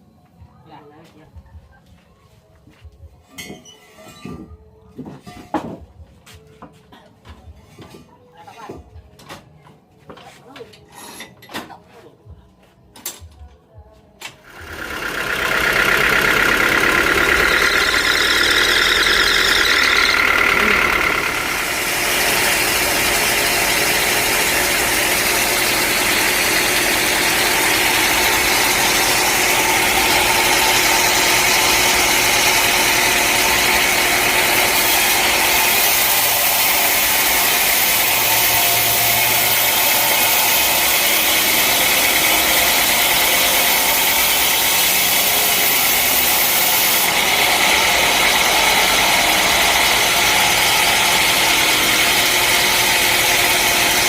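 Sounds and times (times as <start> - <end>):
sawmill machinery running: 14.2 - 54.0.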